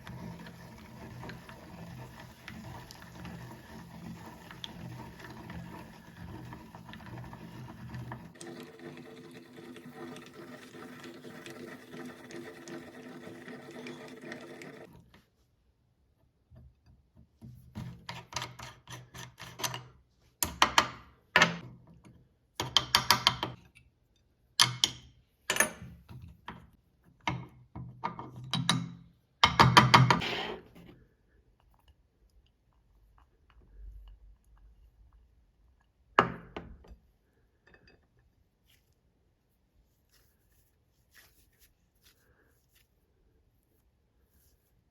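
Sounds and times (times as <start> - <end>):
crushing and crackling in grinder: 0.0 - 14.9
meat grinder humming: 0.0 - 14.9.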